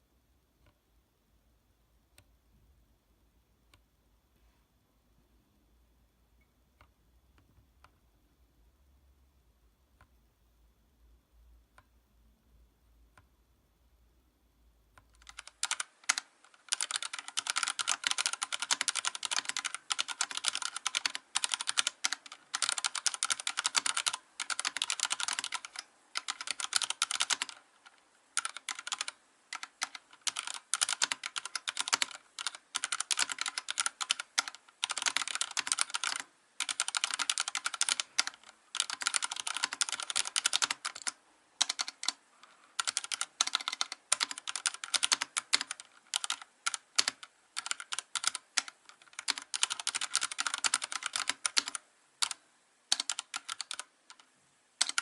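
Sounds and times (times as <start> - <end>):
fast mechanical keyboard typing: 15.2 - 42.2, 42.8 - 55.0.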